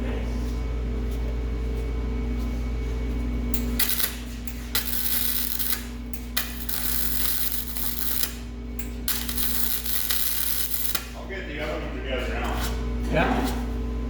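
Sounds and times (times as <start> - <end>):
steady low hum: 0.0 - 14.0
welding arc crackling and sizzling: 3.5 - 12.3.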